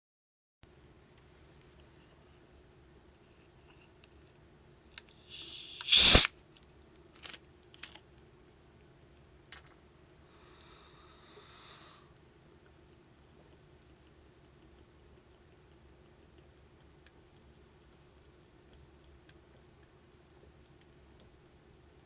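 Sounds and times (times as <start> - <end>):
bottle cap twisting off with hiss: 5.3 - 6.3.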